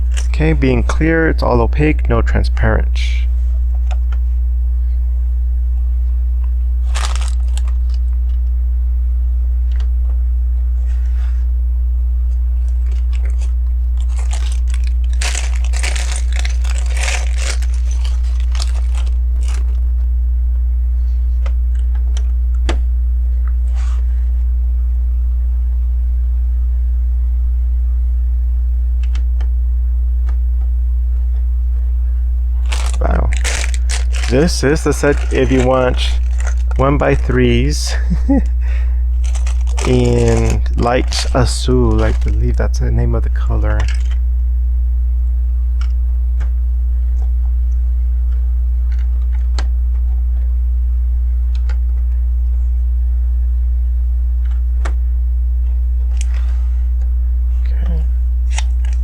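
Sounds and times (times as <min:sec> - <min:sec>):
low electrical hum: 0:00.0 - 0:59.0
plastic pieces clattering: 0:06.9 - 0:08.0, 0:12.7 - 0:19.8, 0:32.6 - 0:37.3, 0:39.2 - 0:41.3.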